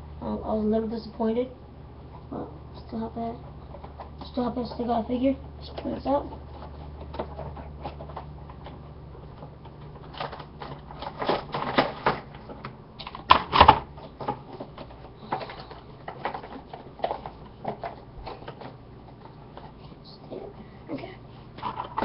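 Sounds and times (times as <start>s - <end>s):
cardboard and plastic crinkling: 6.2s - 19.8s.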